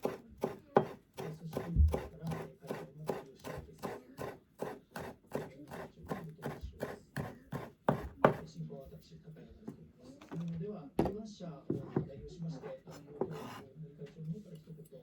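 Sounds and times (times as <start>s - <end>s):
knife chopping on cutting board: 0.0s - 8.5s, 13.2s - 13.6s.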